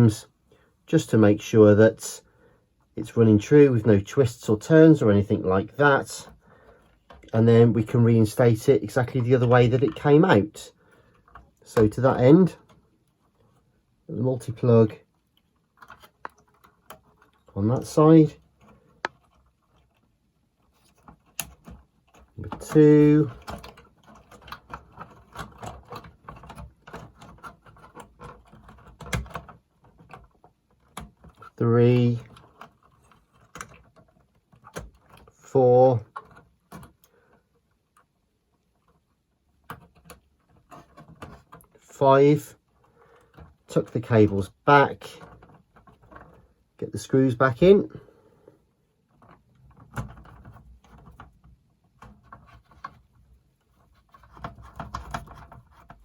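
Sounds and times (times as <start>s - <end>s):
clicks of connectors being handled: 14.5s - 46.4s, 49.0s - 56.0s.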